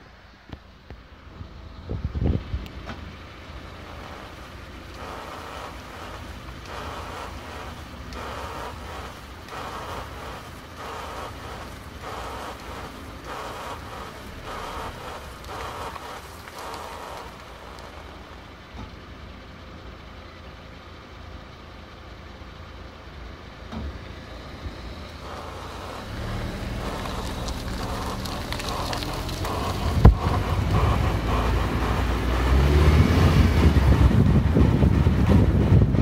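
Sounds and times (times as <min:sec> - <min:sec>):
tire and road noise: 0:00.0 - 0:36.0
low droning hum: 0:03.4 - 0:18.7, 0:24.5 - 0:36.0.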